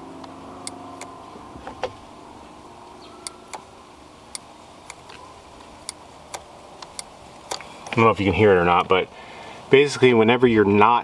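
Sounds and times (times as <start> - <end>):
throttle switch clicking: 3.2 - 3.7, 5.8 - 8.0.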